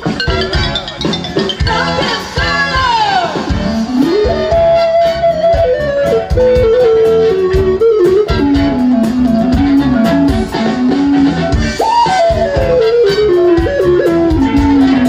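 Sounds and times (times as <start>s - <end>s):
band playing steady beat: 0.0s - 15.0s
electric guitar solo: 0.0s - 15.0s.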